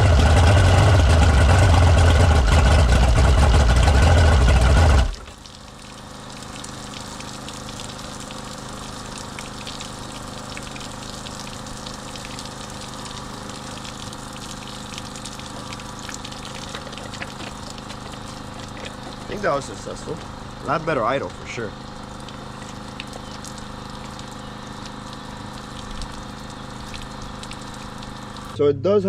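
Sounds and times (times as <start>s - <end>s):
outboard engine idling: 0.0s - 28.6s
faint steady hum: 5.2s - 29.0s.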